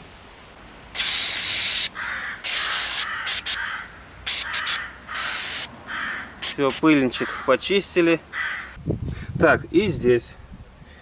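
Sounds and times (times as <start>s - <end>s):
aerosol spray hissing: 1.0s - 3.6s, 4.3s - 5.7s, 6.4s - 6.8s.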